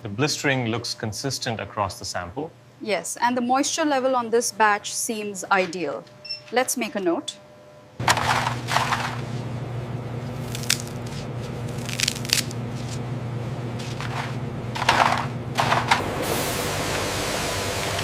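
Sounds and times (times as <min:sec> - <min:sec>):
low machine hum: 0:00.0 - 0:18.0
sharp crisp crunches: 0:10.3 - 0:13.0.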